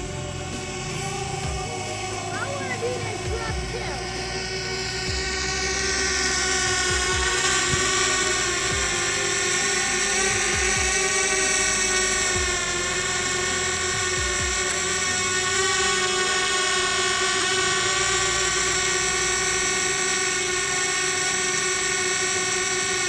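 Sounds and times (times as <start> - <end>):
low thumps: 0.0 - 9.2
drone propellers whining: 0.0 - 23.0.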